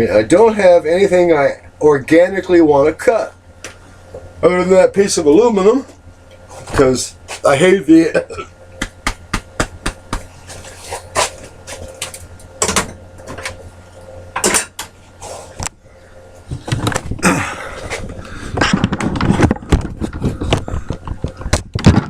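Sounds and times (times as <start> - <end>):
objects clattering on a workbench: 14.4 - 14.9, 18.5 - 22.0.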